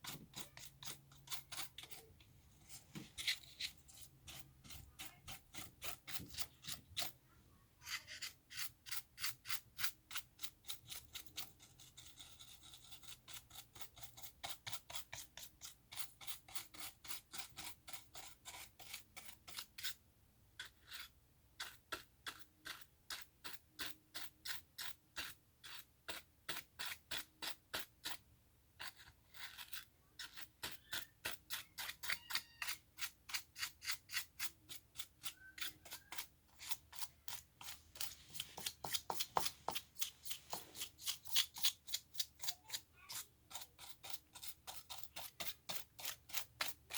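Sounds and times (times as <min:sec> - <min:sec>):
brush scrubbing: 0:35.4 - 0:41.8.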